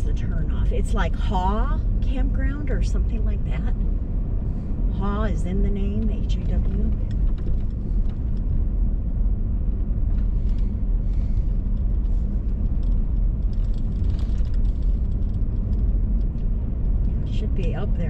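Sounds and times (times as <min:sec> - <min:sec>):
engine and tyre road noise: 0:00.0 - 0:18.0.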